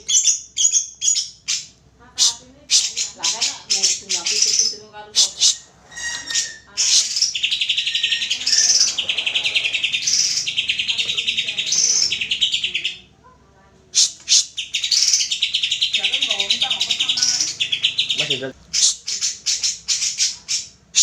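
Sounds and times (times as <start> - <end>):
bird trilling song: 0.0 - 13.1, 14.0 - 21.0
sharp bird notes: 0.0 - 13.1.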